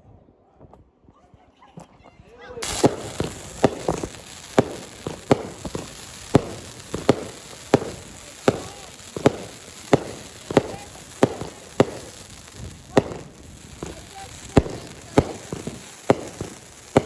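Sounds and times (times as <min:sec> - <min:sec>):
fireworks banging: 0:02.6 - 0:17.0.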